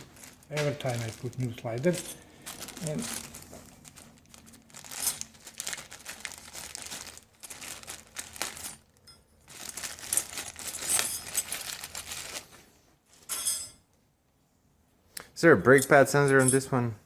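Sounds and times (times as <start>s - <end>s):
plastic packaging crinkling: 0.0s - 12.6s.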